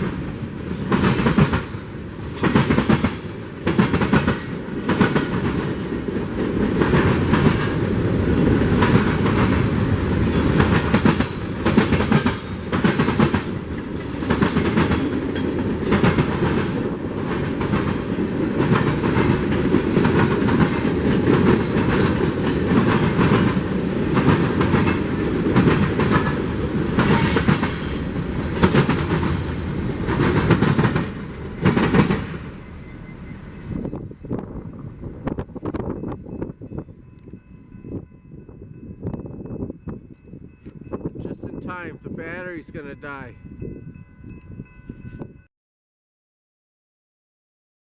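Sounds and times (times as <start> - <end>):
train wheels clicking over rail joints: 0.0 - 32.6
train rumble: 0.0 - 45.5.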